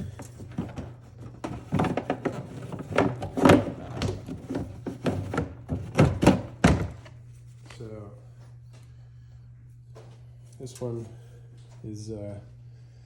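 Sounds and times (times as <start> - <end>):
plastic clicks and knocks: 0.2 - 7.1.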